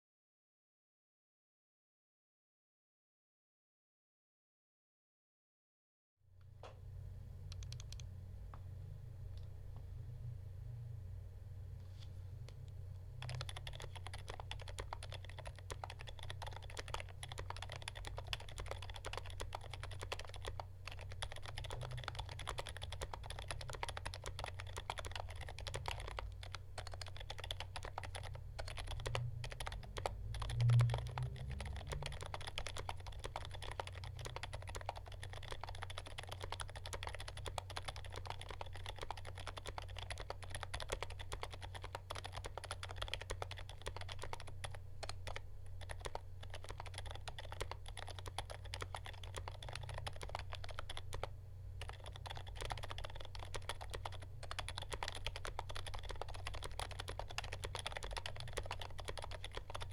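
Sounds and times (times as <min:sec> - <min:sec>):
muted keystrokes on keyboard: 0:07.5 - 0:08.1, 0:13.2 - 0:59.9.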